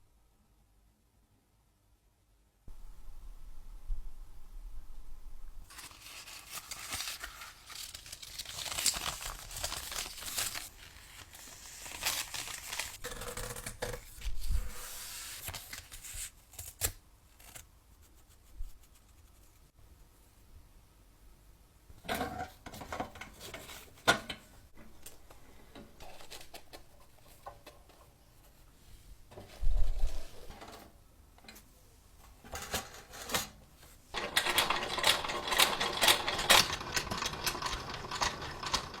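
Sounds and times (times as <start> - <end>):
film projector clattering: 34.2 - 39.0.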